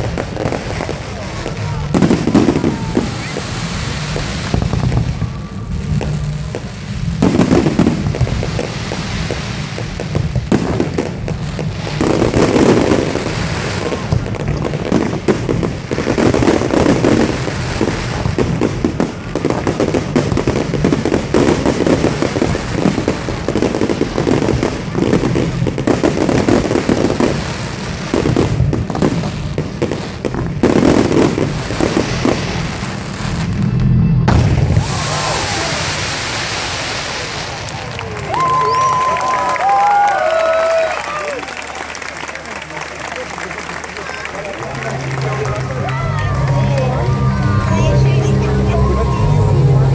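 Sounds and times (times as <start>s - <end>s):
fireworks bangs and crackles: 0.0s - 49.9s.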